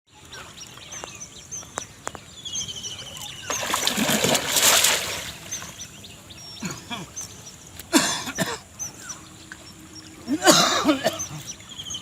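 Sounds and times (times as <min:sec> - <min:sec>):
small birds chirping: 0:00.1 - 0:12.0
water splashing: 0:03.2 - 0:05.9.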